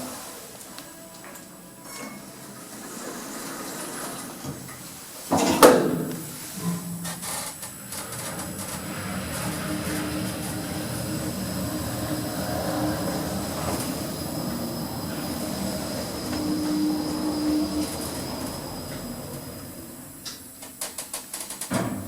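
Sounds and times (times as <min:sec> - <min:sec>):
faint high whine: 0:05.5 - 0:20.8
lift car running rumble: 0:05.6 - 0:20.8.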